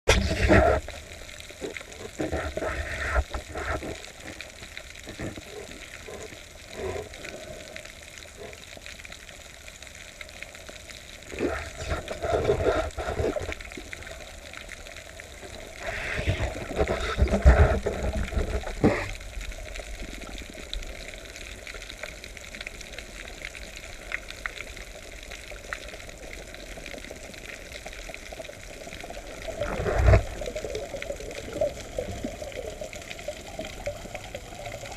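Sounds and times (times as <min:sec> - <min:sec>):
underwater hiss: 0:00.1 - 0:08.6, 0:10.5 - 0:34.9
water rushing bursts: 0:00.1 - 0:08.6, 0:09.4 - 0:34.9.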